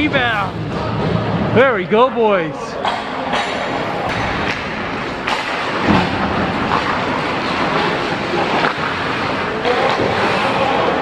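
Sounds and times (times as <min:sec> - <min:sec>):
skates rushing on ice: 0:02.9 - 0:11.0.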